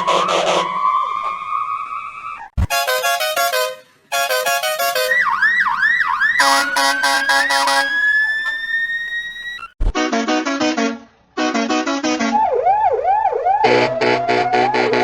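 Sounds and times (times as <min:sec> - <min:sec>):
electronic siren wailing: 0:05.0 - 0:09.7, 0:12.2 - 0:15.0
synthesized tune: 0:06.4 - 0:08.2.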